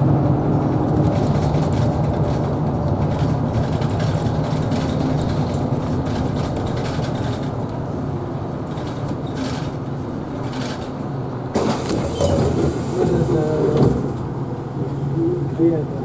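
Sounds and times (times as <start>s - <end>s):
bus drivetrain hum: 0.0s - 16.0s
road noise: 0.0s - 16.0s.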